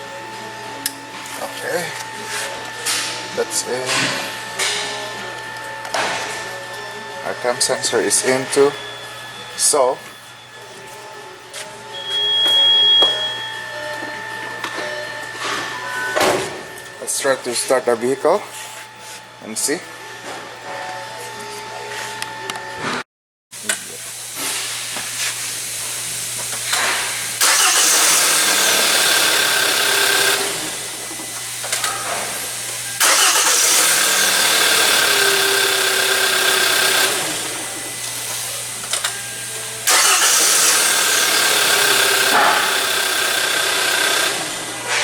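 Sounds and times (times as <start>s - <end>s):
car engine starting and running: 27.4s - 31.0s, 33.0s - 37.9s, 38.9s - 44.6s.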